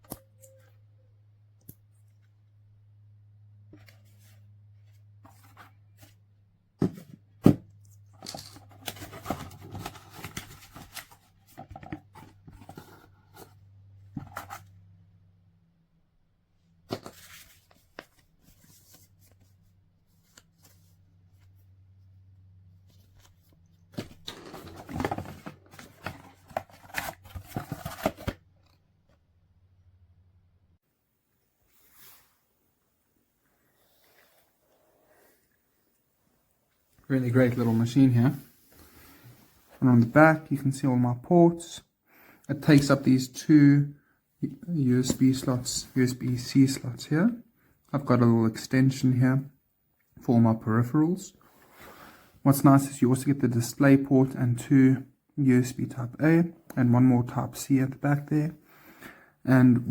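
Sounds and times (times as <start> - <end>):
rustling and crinkling: 22.7 - 28.8.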